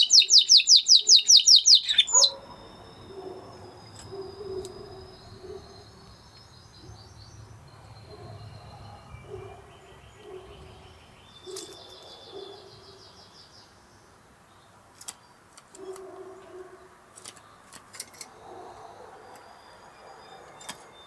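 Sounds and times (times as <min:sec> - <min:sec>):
canary singing with trills: 0:00.0 - 0:13.8.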